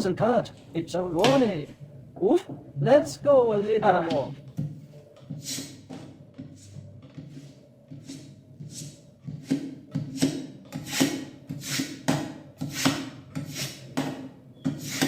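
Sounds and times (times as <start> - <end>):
knife rasping through sharpener: 13.5 - 13.8.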